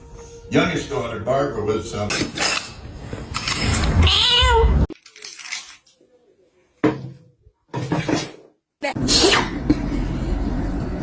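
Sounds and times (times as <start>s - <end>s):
cat meowing: 4.0s - 4.9s.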